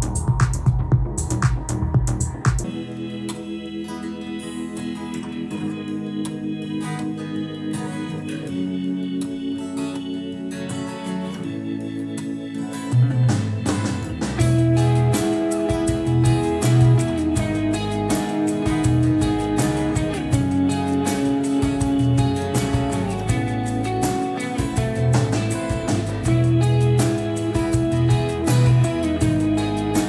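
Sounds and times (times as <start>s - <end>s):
strong bass line: 0.0s - 2.7s, 13.3s - 30.0s
instrumental music with held chords: 0.0s - 30.0s.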